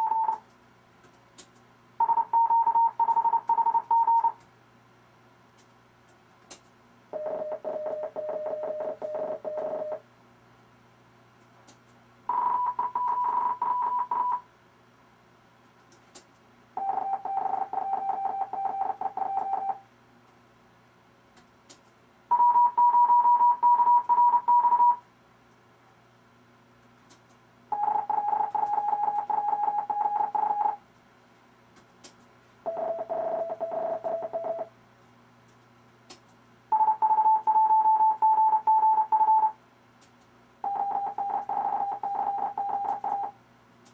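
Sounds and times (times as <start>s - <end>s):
morse code beeps: 0.0s - 0.4s, 2.0s - 4.4s, 7.2s - 10.0s, 12.3s - 14.4s, 16.8s - 19.8s, 22.3s - 25.0s, 27.8s - 30.8s, 32.7s - 34.7s, 36.7s - 39.6s, 40.6s - 43.3s.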